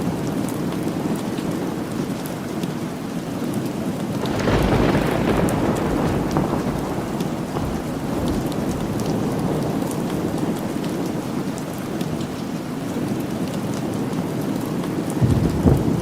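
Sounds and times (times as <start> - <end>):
steady rain: 0.0 - 16.0
low rumble of thunder: 4.2 - 11.6, 15.2 - 16.0.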